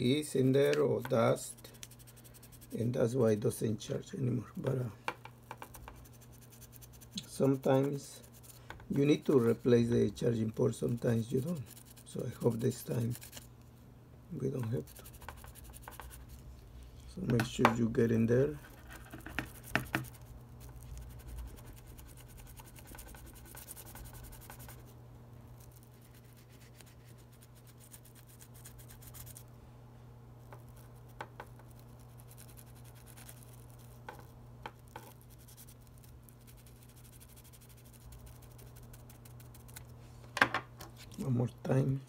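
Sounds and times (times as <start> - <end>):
toothbrush bristles scratching: 5.5 - 13.5, 14.5 - 16.5, 18.0 - 24.9, 25.5 - 29.4, 30.4 - 40.0.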